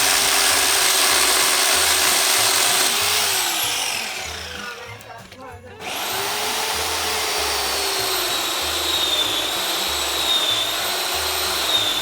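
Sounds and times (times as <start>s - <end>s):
machine motor humming and whining: 1.4s - 4.8s, 5.8s - 12.0s.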